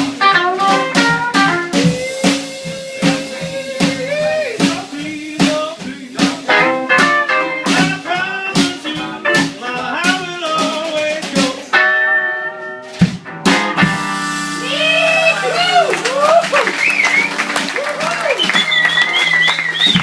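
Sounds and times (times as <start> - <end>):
electric guitar bent notes: 0.0 - 5.1
blues band playing live: 0.0 - 20.0.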